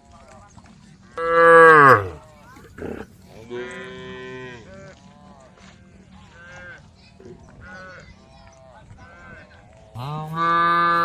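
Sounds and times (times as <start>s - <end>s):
cows mooing: 1.2s - 4.6s.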